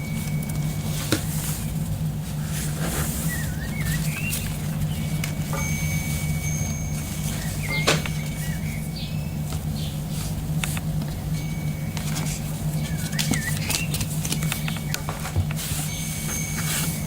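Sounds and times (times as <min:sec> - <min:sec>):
small birds chirping: 0:00.0 - 0:17.0
steady low hum: 0:00.0 - 0:17.0.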